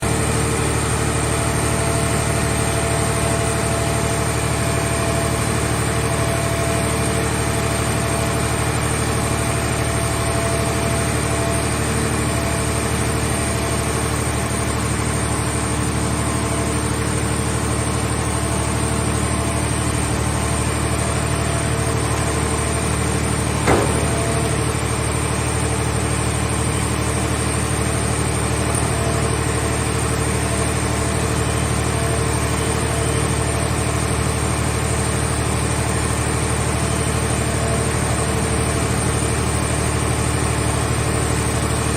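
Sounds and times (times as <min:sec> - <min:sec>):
hydraulic power unit running: 0:00.0 - 0:41.9
metal clank: 0:23.5 - 0:24.9.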